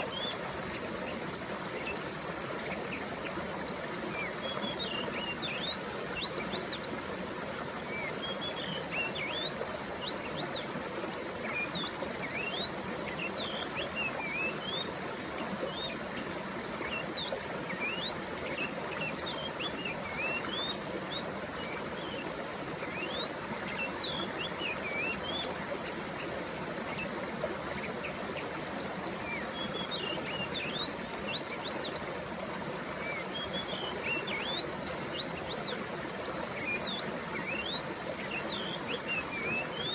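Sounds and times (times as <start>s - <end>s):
flowing water rushing: 0.0s - 39.9s
birds chirping: 15.6s - 39.9s.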